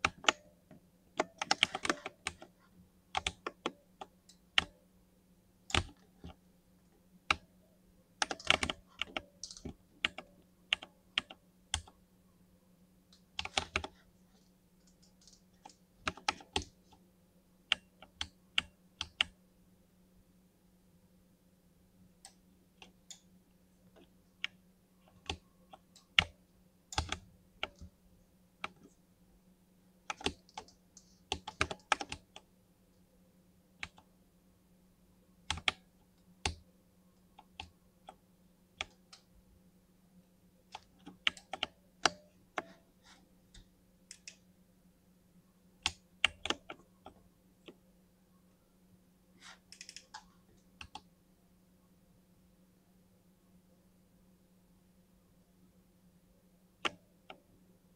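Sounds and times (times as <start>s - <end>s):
mechanical keyboard keystrokes: 1.2s - 2.5s, 8.2s - 11.9s.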